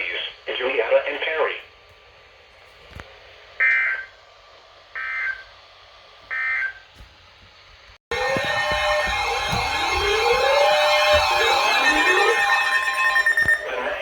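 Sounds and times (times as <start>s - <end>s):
loud busy sound: 8.1s - 14.0s
warbling digital data tones: 8.2s - 14.0s.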